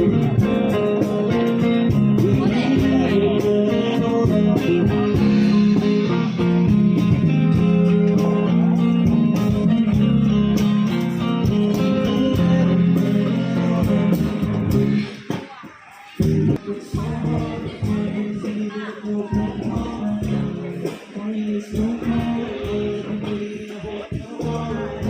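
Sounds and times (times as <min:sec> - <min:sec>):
electric guitar passage: 0:00.0 - 0:15.5
steady drum beat: 0:00.0 - 0:25.0.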